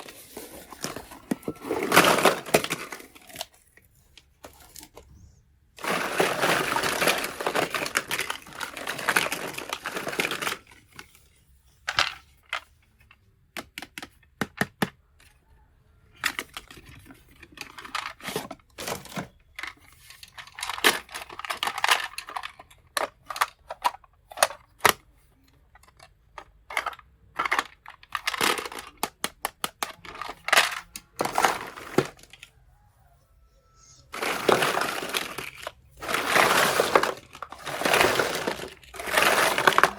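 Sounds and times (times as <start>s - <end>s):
plastic packaging crinkling: 0.0s - 3.6s, 5.8s - 11.1s, 16.2s - 23.7s, 26.8s - 32.6s, 34.0s - 39.9s
toy pieces clicking: 34.1s - 39.9s.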